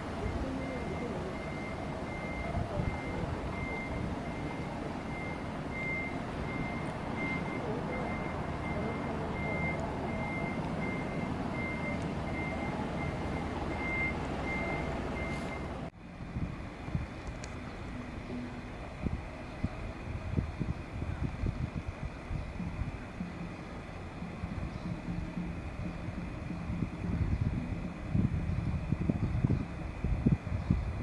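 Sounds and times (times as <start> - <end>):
engine rumble: 0.0 - 31.0
reversing alarm beeping: 0.2 - 15.8.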